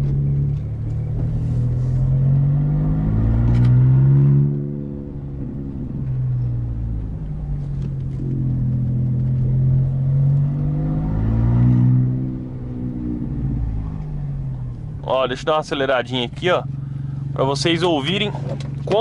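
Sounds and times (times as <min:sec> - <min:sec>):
car engine with open exhaust: 0:00.0 - 0:19.0.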